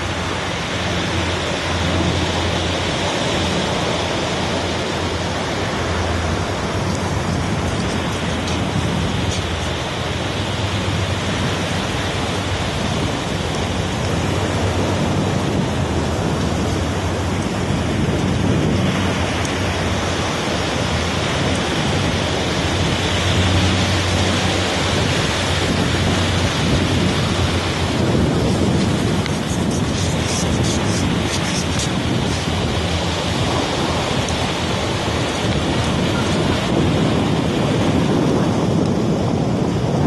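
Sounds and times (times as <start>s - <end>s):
surf rushing: 0.0s - 40.0s
wind buffeting microphone: 0.0s - 40.0s.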